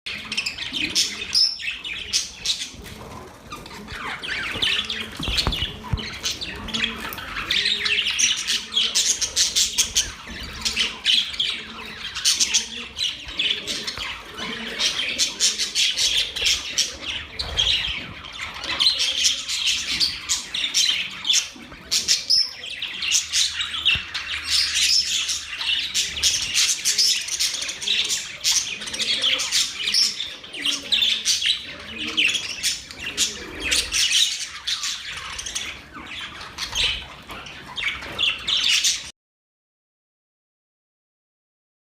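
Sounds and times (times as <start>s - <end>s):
budgerigars chirping and chattering: 0.1s - 39.1s.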